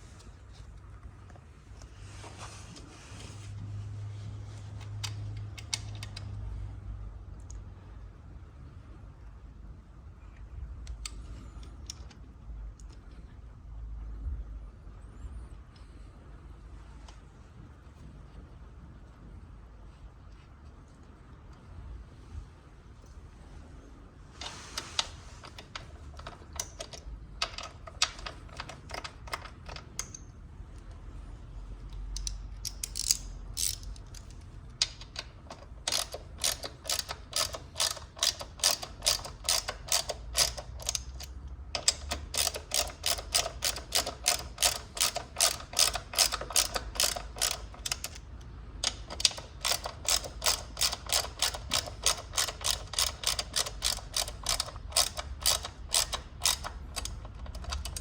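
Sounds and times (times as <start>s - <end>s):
socket ratchet clicking: 32.1s - 58.0s.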